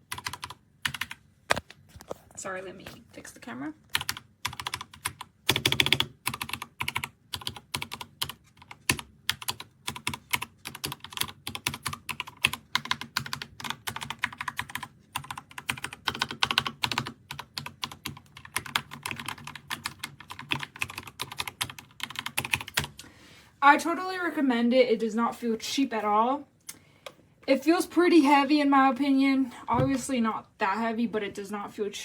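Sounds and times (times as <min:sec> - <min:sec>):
mechanical keyboard typing: 0:00.0 - 0:01.6, 0:03.9 - 0:23.0.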